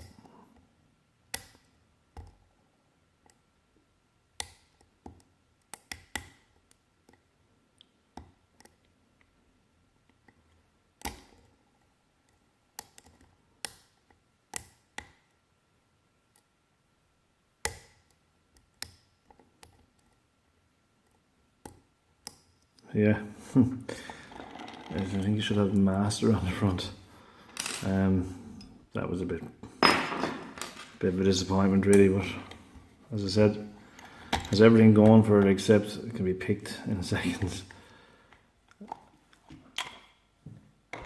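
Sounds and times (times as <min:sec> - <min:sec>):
lock pick clicking and tapping: 0:04.4 - 0:07.2, 0:12.8 - 0:15.3, 0:17.6 - 0:20.1.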